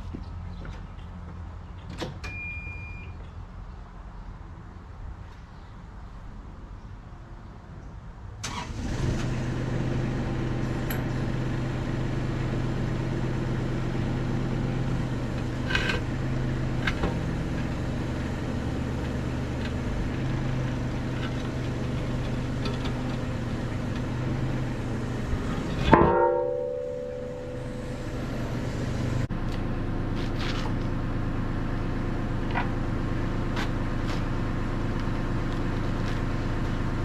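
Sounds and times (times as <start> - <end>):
excavator diesel engine idling: 9.5 - 37.0.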